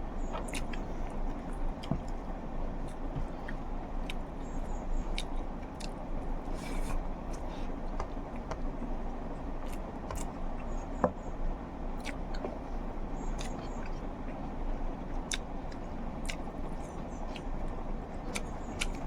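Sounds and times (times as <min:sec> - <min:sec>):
person chewing: 0:00.2 - 0:08.8, 0:12.0 - 0:12.6, 0:15.3 - 0:17.6, 0:18.2 - 0:19.0.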